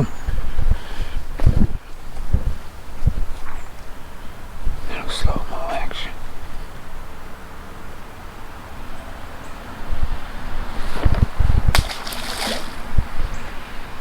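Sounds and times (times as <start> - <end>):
wind and water rushing: 0.0 - 14.0
fish splashing into water: 11.6 - 13.0.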